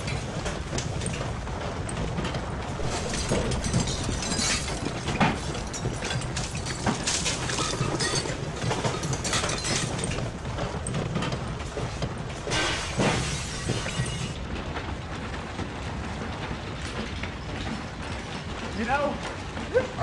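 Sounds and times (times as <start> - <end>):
low earthquake rumble: 0.0 - 18.7
things rattling and clattering: 0.0 - 20.0
crashing: 2.7 - 14.5.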